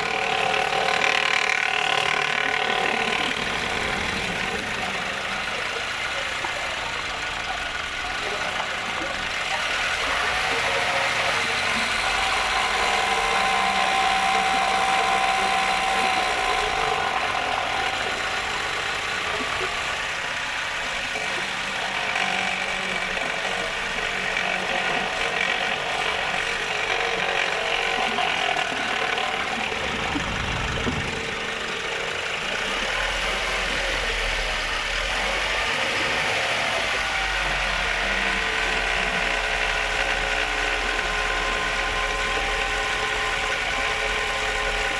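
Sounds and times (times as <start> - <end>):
diesel engine running: 0.0 - 44.9
ratchet-like mechanical clatter: 0.0 - 44.9.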